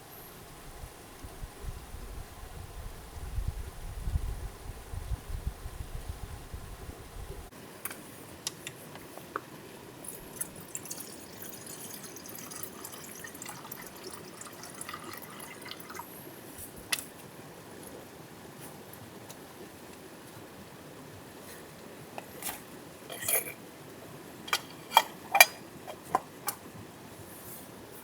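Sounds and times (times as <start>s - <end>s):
water trickling and dripping: 10.0s - 16.3s.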